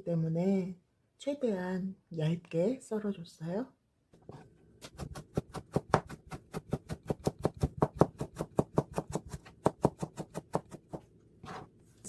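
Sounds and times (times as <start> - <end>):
knife chopping on cutting board: 4.8 - 11.6.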